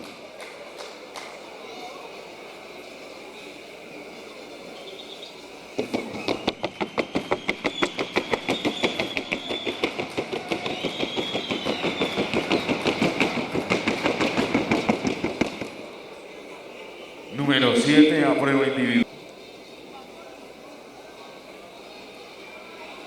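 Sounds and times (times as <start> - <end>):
faint high whistling tone: 6.1 - 9.9, 10.5 - 12.8.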